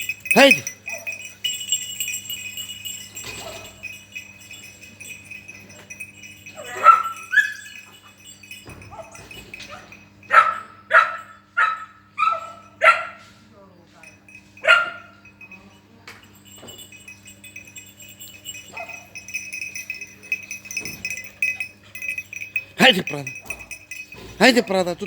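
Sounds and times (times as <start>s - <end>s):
dog yelping: 6.5s - 8.2s, 8.9s - 13.2s, 18.7s - 19.1s.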